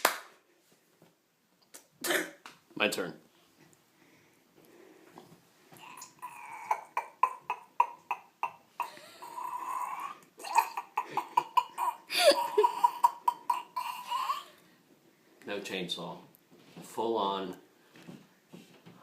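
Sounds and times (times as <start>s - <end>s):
person making duck mouth sounds: 5.8s - 14.6s.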